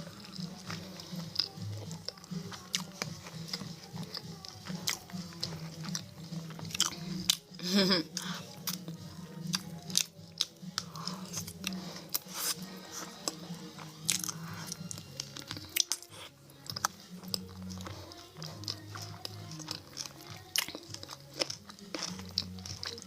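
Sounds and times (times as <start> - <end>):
chewing and crunching food: 0.0 - 23.0.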